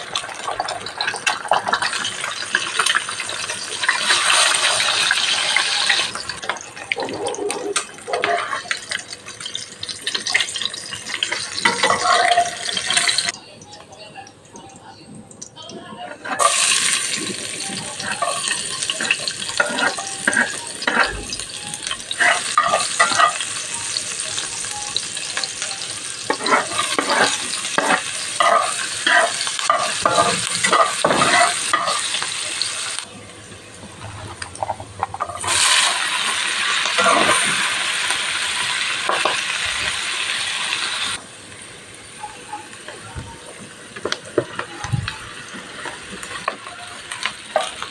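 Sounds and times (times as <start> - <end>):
rice sizzling in a hot pan: 0.0 - 6.4, 16.4 - 33.1, 35.4 - 47.9
scraping and clinking stirring: 18.0 - 21.2, 26.3 - 31.9.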